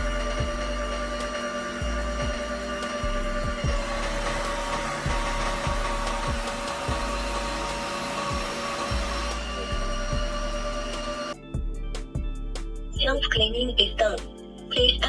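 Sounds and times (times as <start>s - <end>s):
vacuum suction motor whine: 0.0s - 11.4s.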